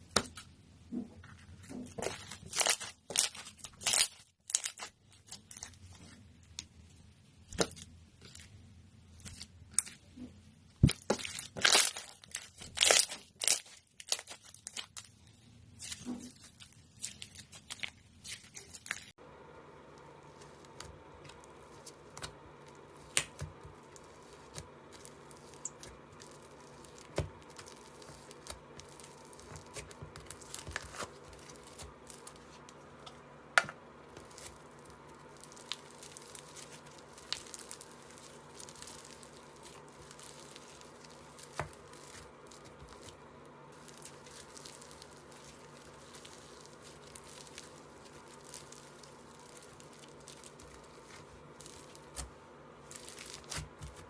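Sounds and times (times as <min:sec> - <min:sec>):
slime squished by hand: 0:07.4 - 0:19.1, 0:34.1 - 0:54.0.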